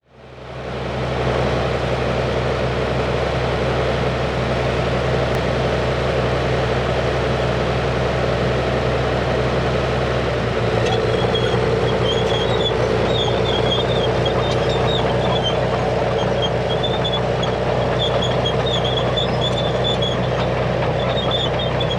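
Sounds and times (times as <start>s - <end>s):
tank engine droning: 0.2s - 21.9s
squeaking tank tracks: 10.6s - 21.9s.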